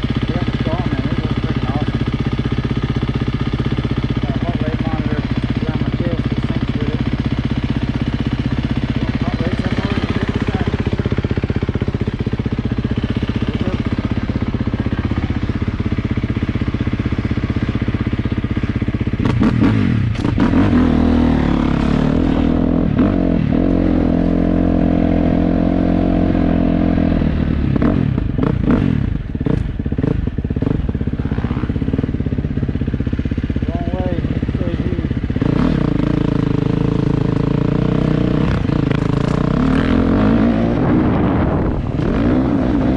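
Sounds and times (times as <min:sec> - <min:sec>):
dirt bike engine revving: 0:00.0 - 0:42.9.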